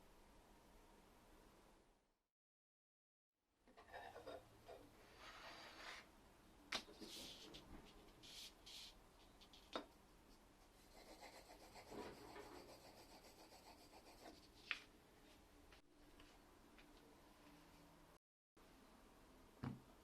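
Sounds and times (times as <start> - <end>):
faint rubbing and scraping: 3.8 - 6.2, 10.3 - 14.6.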